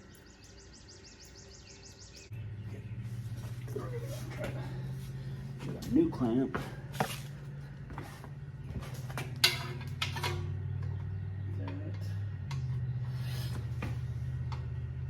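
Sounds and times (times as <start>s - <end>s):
steady low hum: 0.0s - 15.0s
light clicks and knocks of metal hardware: 8.7s - 12.9s.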